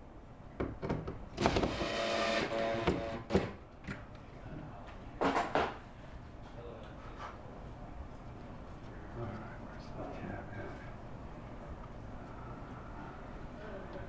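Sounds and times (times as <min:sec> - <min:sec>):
power tool motor whirring: 0:01.4 - 0:03.3.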